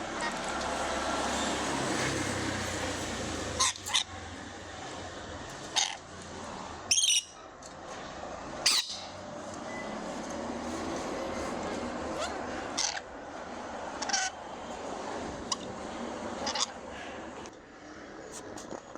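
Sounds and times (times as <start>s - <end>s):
lovebirds chirping: 6.9s - 7.4s, 8.6s - 9.2s.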